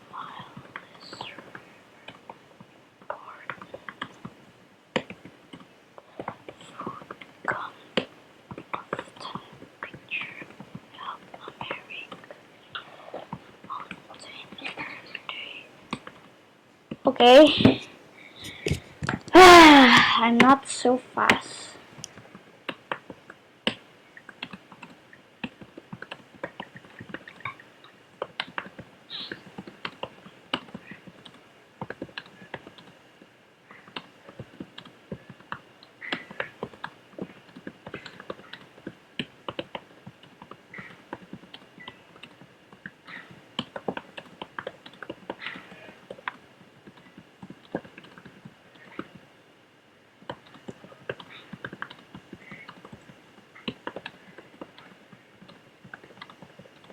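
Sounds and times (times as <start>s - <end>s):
fast keyboard typing: 43.3s - 49.3s, 50.3s - 56.9s.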